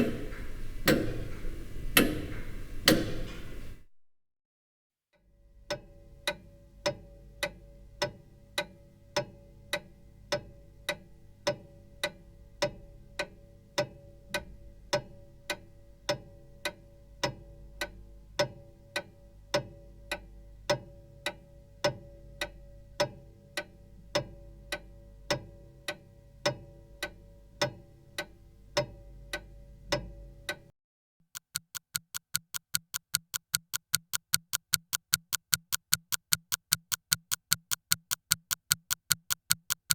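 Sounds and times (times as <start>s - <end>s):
clock ticking: 0.0s - 3.2s, 31.3s - 39.9s
electronic ticking: 31.3s - 39.9s.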